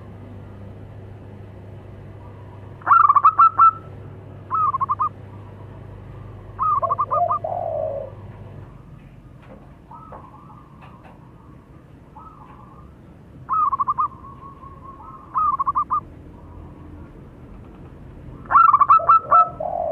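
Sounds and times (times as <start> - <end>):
doves cooing staccato notes: 2.0 - 19.9
low drawn-out dove call: 2.2 - 8.3, 12.2 - 16.1, 18.4 - 19.9.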